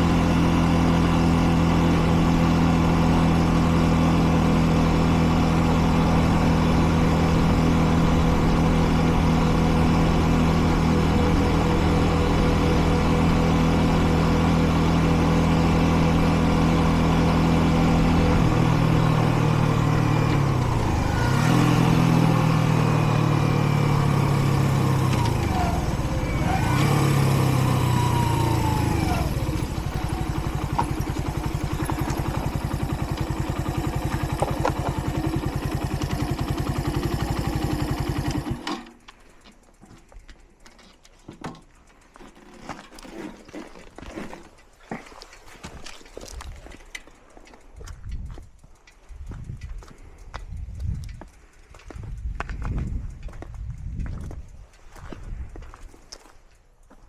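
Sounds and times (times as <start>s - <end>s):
motorcycle engine idling: 0.0s - 42.3s.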